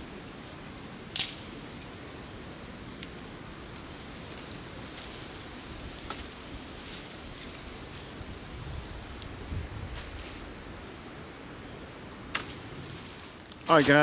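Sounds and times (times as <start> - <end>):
wind blowing: 0.0 - 14.0
faint clicks: 3.0 - 3.2.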